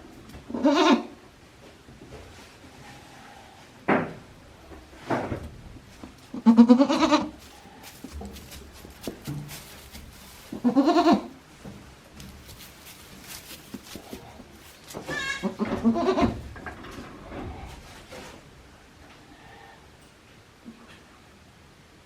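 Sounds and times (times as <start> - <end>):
goats bleating: 6.3 - 8.2, 10.5 - 11.4, 13.4 - 16.4.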